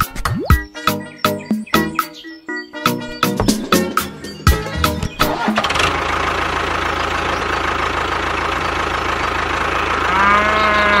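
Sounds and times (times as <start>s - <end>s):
music with a beat: 0.0s - 5.4s
engine starting and idling: 3.8s - 10.8s.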